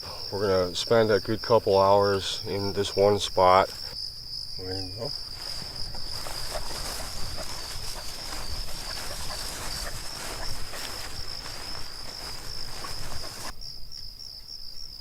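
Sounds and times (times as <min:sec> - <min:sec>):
insects chirring: 0:00.0 - 0:15.0
rustling and crackling: 0:04.9 - 0:13.6.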